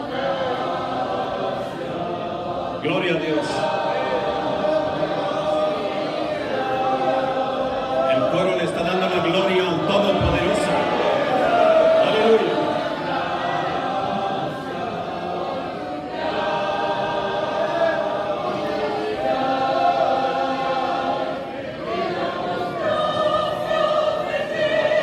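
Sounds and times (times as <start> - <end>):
church choir singing: 0.0 - 25.0.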